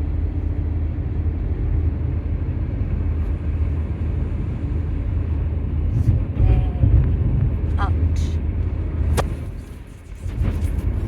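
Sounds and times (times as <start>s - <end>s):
car cabin road rumble: 0.0s - 11.0s.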